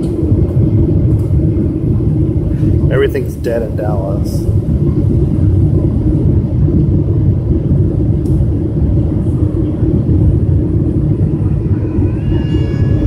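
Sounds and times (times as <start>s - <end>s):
airplane cabin engine rumble: 0.0s - 13.0s.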